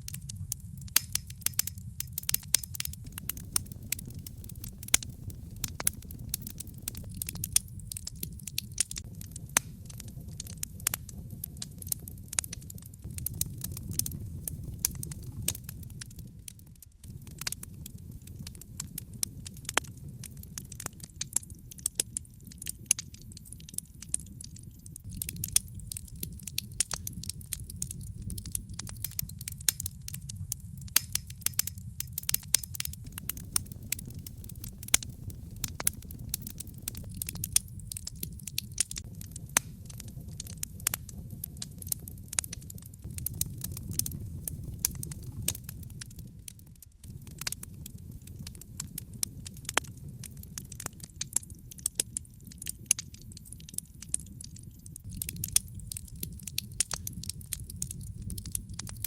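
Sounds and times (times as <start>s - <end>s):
fire crackling and popping: 0.0s - 59.0s
low rumble of fire: 0.0s - 59.0s.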